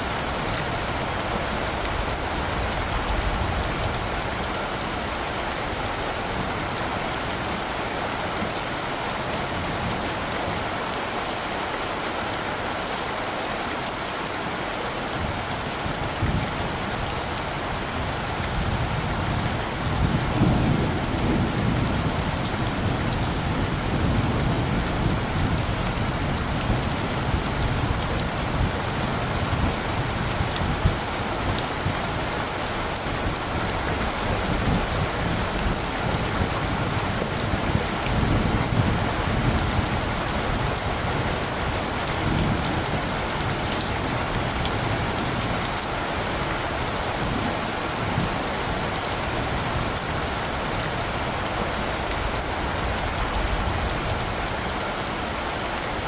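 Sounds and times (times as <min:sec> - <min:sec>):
steady rain falling: 0:00.0 - 0:56.0
low rolls of thunder: 0:15.2 - 0:45.9.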